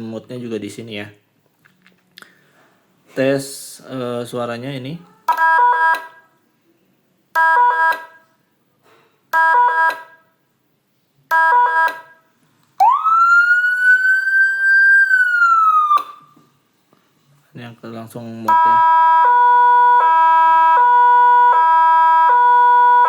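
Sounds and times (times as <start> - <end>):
siren blips: 12.8 - 16.4, 18.5 - 23.0
siren wail: 12.8 - 16.4, 18.8 - 23.0.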